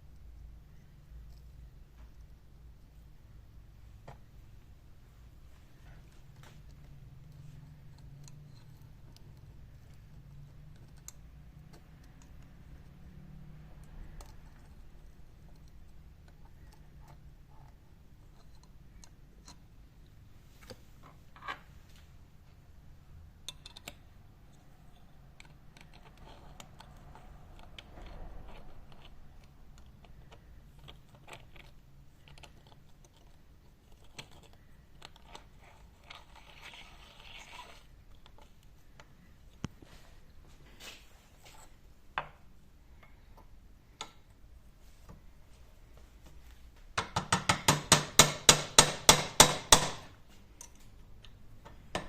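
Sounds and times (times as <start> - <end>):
metal parts clicking and tapping: 6.1 - 21.7, 22.4 - 39.8, 47.0 - 52.0.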